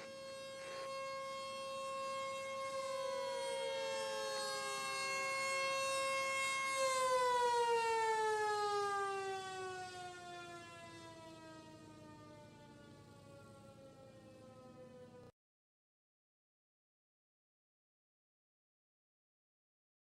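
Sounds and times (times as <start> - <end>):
fainter siren sliding down: 0.0 - 15.3
warning siren winding down: 0.0 - 15.3.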